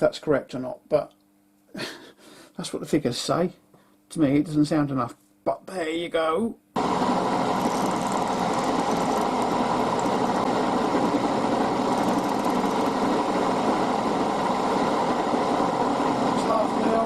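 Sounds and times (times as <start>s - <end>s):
milling machine motor hum: 6.8s - 16.9s.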